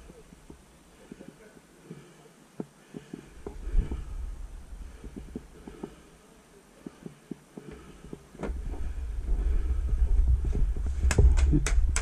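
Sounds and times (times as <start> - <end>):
low microphone rumble: 3.4 - 5.7, 8.4 - 12.0
sharp clicks: 11.0 - 12.0.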